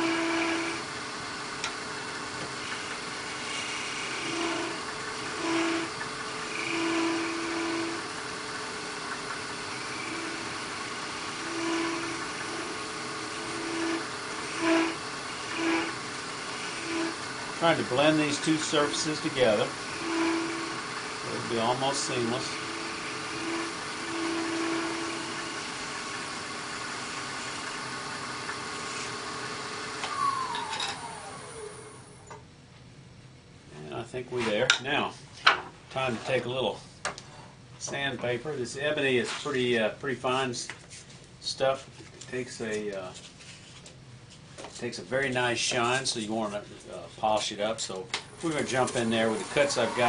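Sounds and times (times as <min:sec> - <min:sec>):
wood lathe running: 0:00.0 - 0:32.2, 0:48.2 - 0:50.0
scraper cutting wood: 0:09.7 - 0:26.0.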